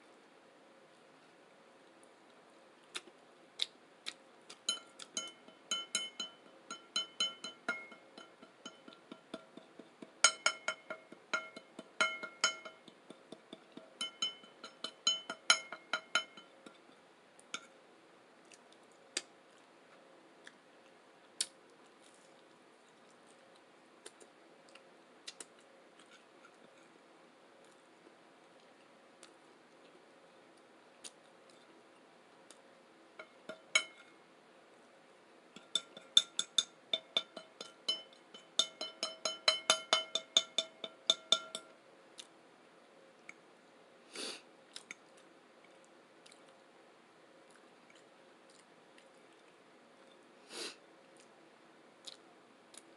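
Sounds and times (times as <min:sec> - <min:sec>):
cutlery clinking against plate: 0:04.7 - 0:16.8, 0:33.2 - 0:34.1, 0:35.6 - 0:41.7.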